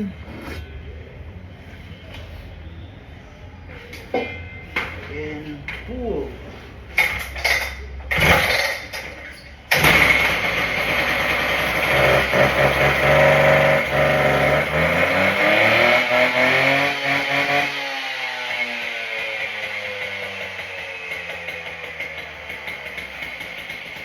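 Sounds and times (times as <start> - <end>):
concrete saw engine running: 9.7 - 24.0.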